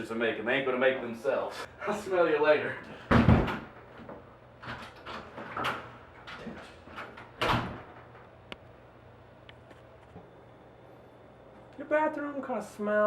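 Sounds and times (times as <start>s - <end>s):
door opening and shutting: 2.9s - 8.3s.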